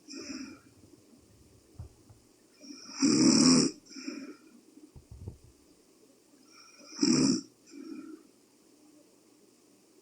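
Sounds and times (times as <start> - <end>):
low thump: 1.8 - 2.2, 5.0 - 5.5.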